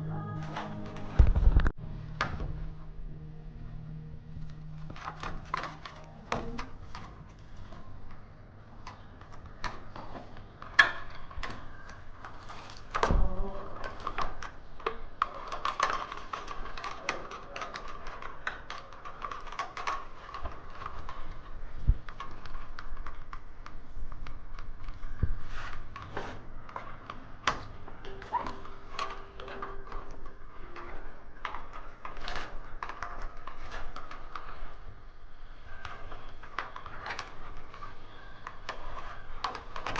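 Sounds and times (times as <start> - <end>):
clicks and taps of wiring work: 4.4 - 39.9.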